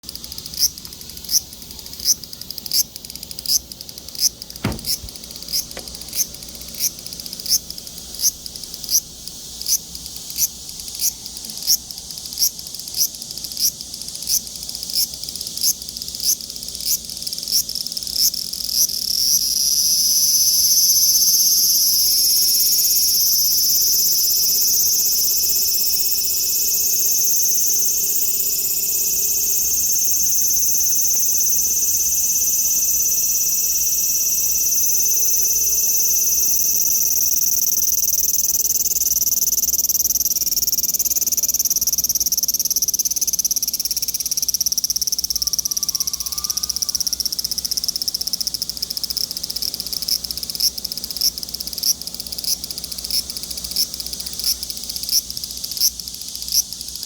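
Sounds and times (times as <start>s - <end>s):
cicada buzzing: 0.0s - 57.0s.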